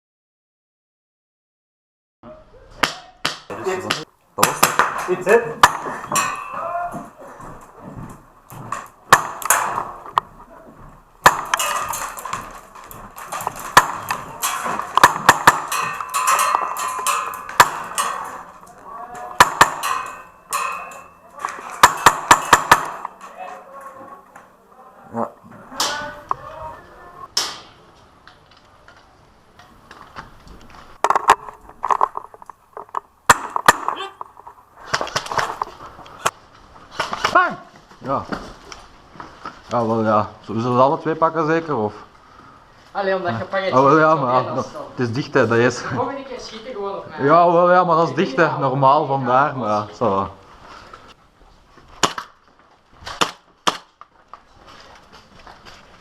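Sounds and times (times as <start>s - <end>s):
faint voices: 5.9s - 8.0s, 15.7s - 21.9s, 22.9s - 27.4s
airsoft rifle shots: 9.1s - 10.0s, 13.2s - 18.6s, 19.3s - 23.2s, 52.0s - 52.4s, 53.1s - 54.0s.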